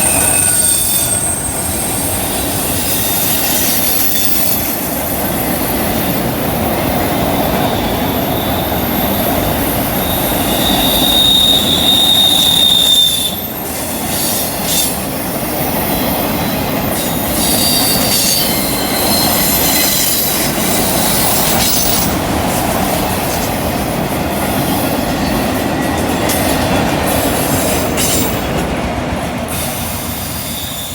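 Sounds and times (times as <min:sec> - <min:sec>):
wheel flanges squealing: 0:00.0 - 0:04.8, 0:07.2 - 0:22.2
railroad cars rumbling: 0:00.0 - 0:30.9.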